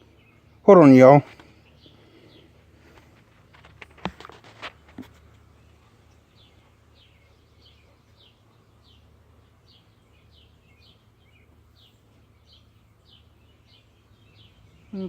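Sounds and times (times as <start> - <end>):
low steady hum: 0.0 - 15.0
bird chirps: 5.5 - 15.0.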